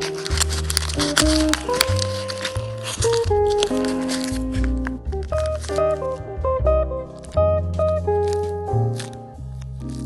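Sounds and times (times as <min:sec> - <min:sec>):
paper or plastic crinkling: 0:00.0 - 0:06.3, 0:07.0 - 0:10.0
background music: 0:00.0 - 0:10.0.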